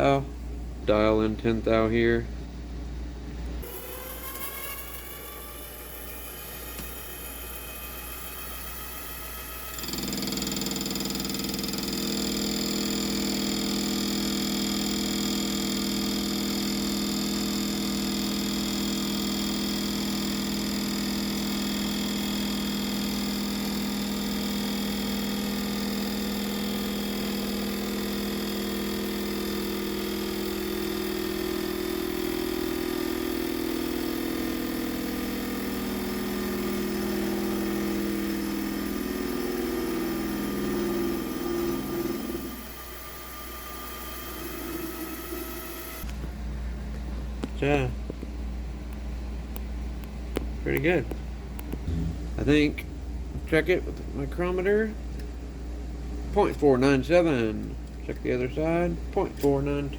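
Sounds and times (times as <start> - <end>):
lathe motor whine: 3.6 - 46.1.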